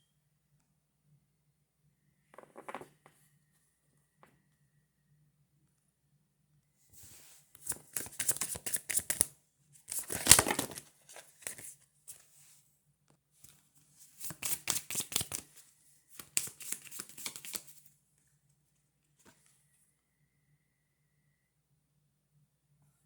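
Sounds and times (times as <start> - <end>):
cards flicking and rustling: 7.6 - 9.3, 9.9 - 12.2, 14.1 - 17.8.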